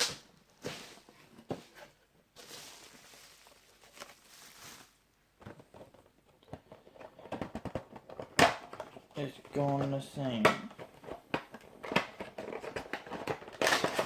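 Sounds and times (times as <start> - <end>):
packaging rustling and scraping: 0.0 - 8.9, 10.9 - 14.0.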